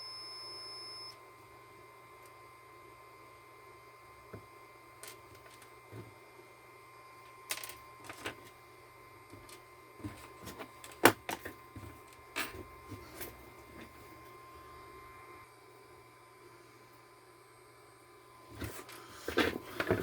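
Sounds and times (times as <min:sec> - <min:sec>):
faint steady high tone: 0:00.0 - 0:04.1.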